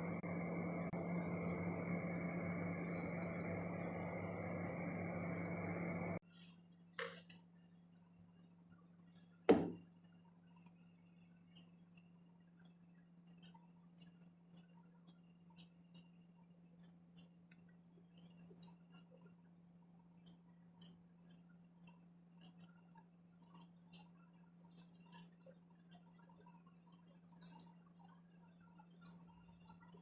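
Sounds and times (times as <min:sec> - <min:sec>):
steady low hum: 0:00.0 - 0:06.7.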